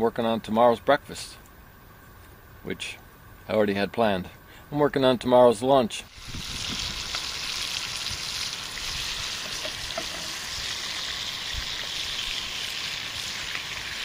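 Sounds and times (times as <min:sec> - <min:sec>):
bacon sizzling in a skillet: 0:06.1 - 0:14.0.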